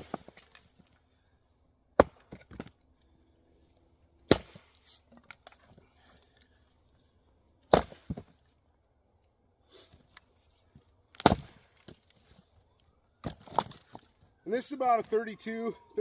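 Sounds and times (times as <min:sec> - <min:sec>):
axe splitting firewood: 0:00.0 - 0:01.0, 0:01.9 - 0:02.8, 0:04.2 - 0:06.4, 0:07.6 - 0:08.6, 0:11.0 - 0:12.3, 0:13.2 - 0:14.2.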